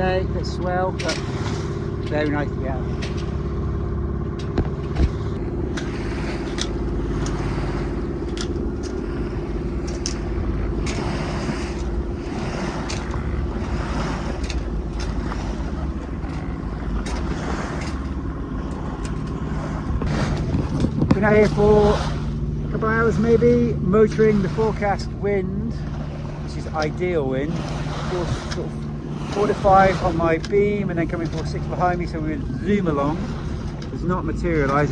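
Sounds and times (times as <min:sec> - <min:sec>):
boat engine running: 0:00.0 - 0:34.9
water washing past hull: 0:00.0 - 0:34.9.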